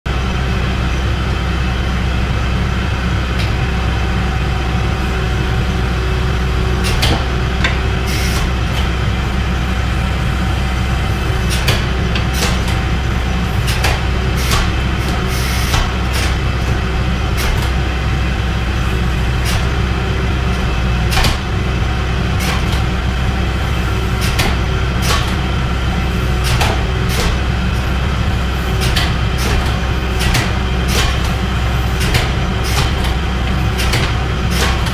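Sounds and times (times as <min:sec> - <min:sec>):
pump motor hum: 0:00.1 - 0:34.9
sharp clicks and clanks: 0:06.8 - 0:09.0, 0:11.3 - 0:18.4, 0:19.3 - 0:23.4, 0:24.0 - 0:34.9.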